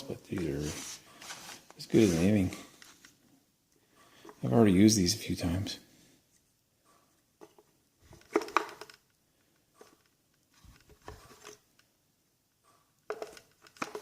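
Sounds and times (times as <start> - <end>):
light rubbing of metal: 0.0 - 2.7.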